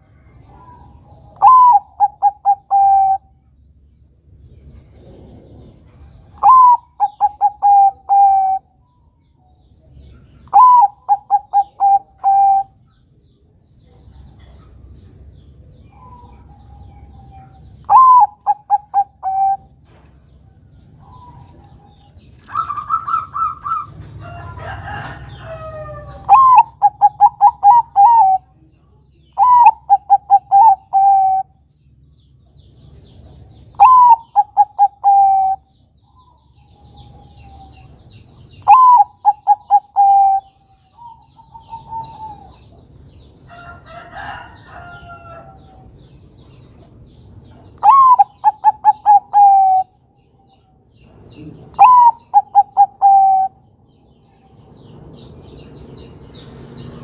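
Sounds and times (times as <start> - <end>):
dove cooing: 0.6 - 3.3, 6.4 - 8.7, 10.4 - 12.8, 15.9 - 19.7, 22.4 - 24.1, 24.8 - 28.6, 29.4 - 31.6, 33.8 - 35.7, 38.6 - 42.6, 47.8 - 50.0, 51.4 - 53.6.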